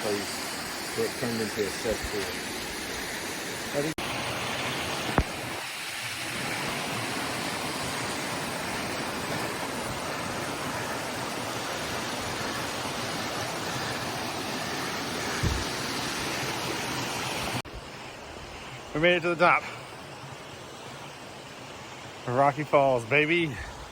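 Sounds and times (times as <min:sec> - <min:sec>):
water rushing over rocks: 0:00.0 - 0:17.9
low thump: 0:15.4 - 0:15.8.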